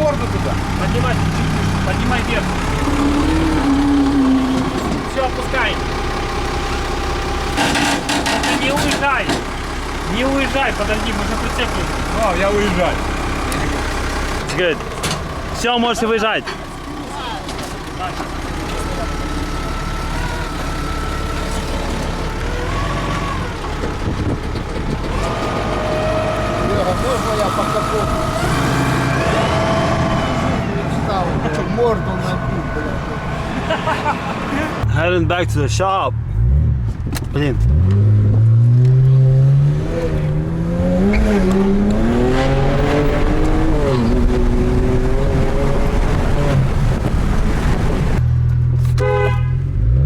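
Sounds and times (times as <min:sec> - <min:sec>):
heavy vehicle engine rumbling: 0:00.0 - 0:50.0
faint engine whine: 0:26.1 - 0:35.7.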